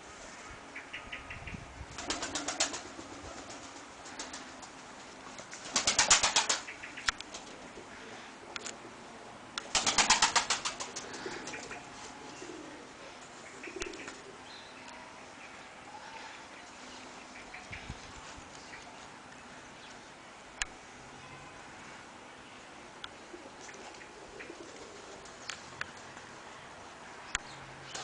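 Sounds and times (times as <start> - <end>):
pigeon wings flapping: 2.0 - 6.7, 9.6 - 11.7.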